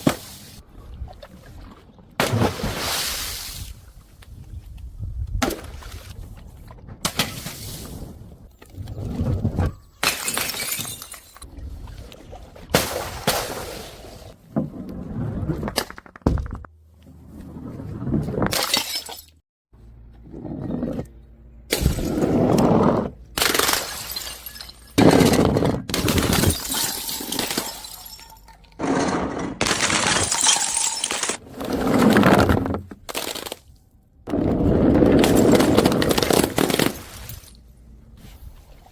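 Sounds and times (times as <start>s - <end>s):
glass bottles smashing: 9.7s - 11.4s, 23.4s - 31.4s.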